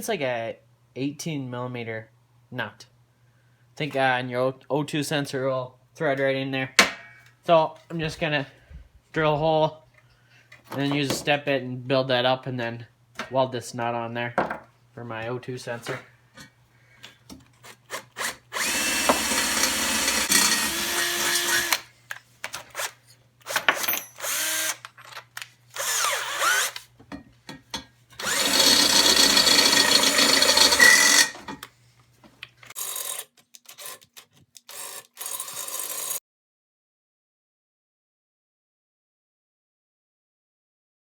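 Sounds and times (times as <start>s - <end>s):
electric drill boring into steel: 17.9s - 21.8s, 23.8s - 24.8s, 25.8s - 26.8s, 28.2s - 31.4s, 34.7s - 36.2s.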